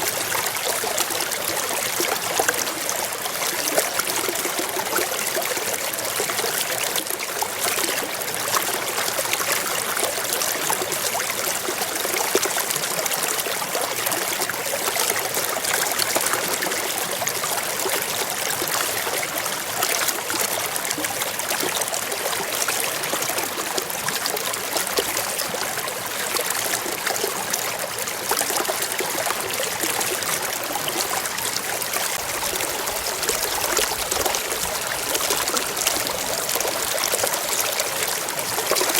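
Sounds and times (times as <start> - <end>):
waterfall rushing and splashing: 30.3 - 38.9.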